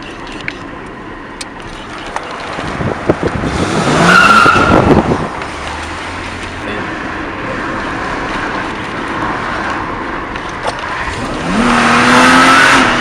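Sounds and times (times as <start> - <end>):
car engine revving: 1.7 - 13.0
tyre squeal: 4.0 - 5.0.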